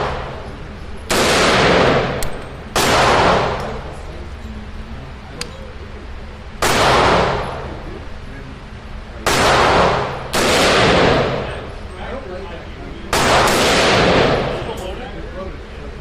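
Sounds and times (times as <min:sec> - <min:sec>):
rifle shots echoing: 0:01.1 - 0:03.9, 0:06.6 - 0:07.8, 0:09.2 - 0:11.7, 0:13.1 - 0:14.7.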